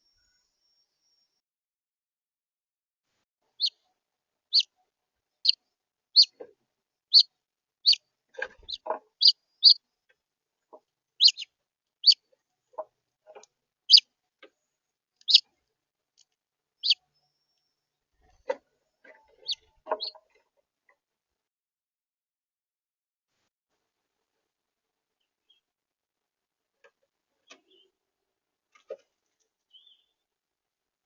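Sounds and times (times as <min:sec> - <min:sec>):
finch chirping: 0:03.6 - 0:03.8, 0:04.5 - 0:04.7, 0:06.2 - 0:06.4, 0:07.1 - 0:08.0, 0:08.6 - 0:09.8, 0:11.2 - 0:12.2, 0:15.2 - 0:15.5, 0:16.8 - 0:17.0, 0:19.2 - 0:20.2, 0:29.7 - 0:30.1.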